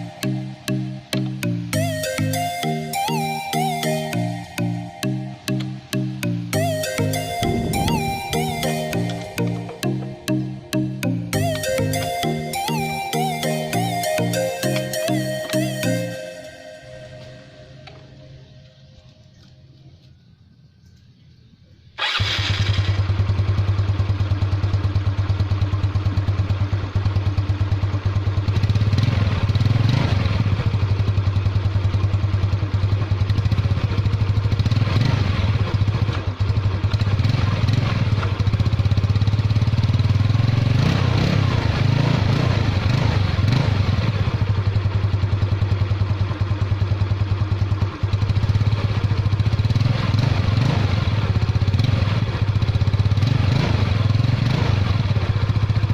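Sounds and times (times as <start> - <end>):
scooter engine revving: 22.0 - 55.9.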